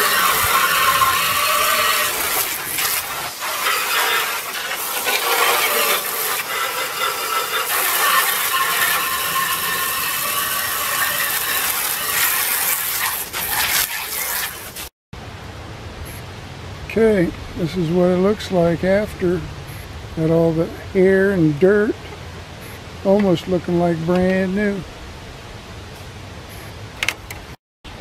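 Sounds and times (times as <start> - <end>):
hose water spraying on metal: 0.0 - 14.9.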